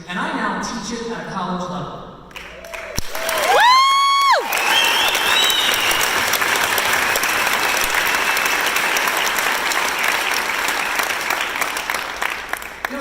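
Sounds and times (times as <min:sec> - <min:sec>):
audience applauding: 0:02.4 - 0:13.0
high-pitched cheer: 0:02.5 - 0:11.4.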